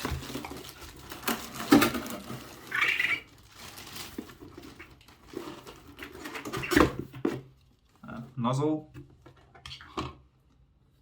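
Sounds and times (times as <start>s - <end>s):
packaging rustle: 0.0s - 6.7s.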